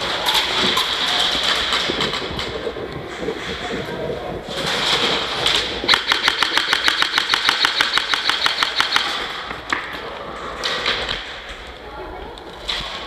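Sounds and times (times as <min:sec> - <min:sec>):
airsoft gun automatic fire: 0:04.9 - 0:09.4.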